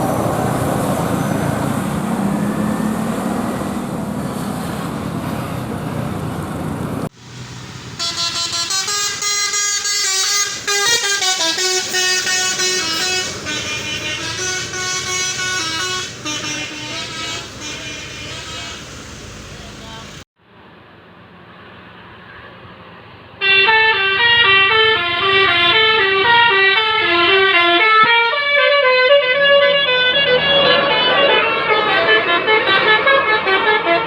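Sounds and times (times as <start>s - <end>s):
passing bus engine: 0.0s - 34.0s
musical bus horn tune: 7.9s - 20.2s, 23.4s - 34.0s.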